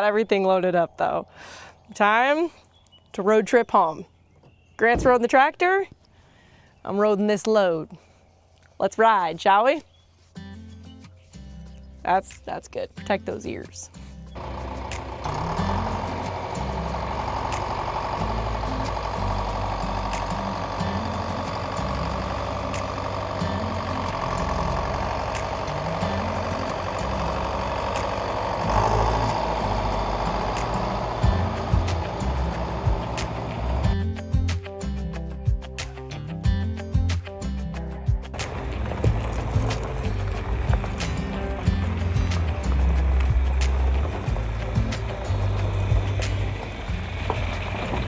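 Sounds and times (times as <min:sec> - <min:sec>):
music with deep bass line: 0:12.9 - 0:48.0
tractor engine running: 0:14.0 - 0:35.6, 0:38.3 - 0:48.0.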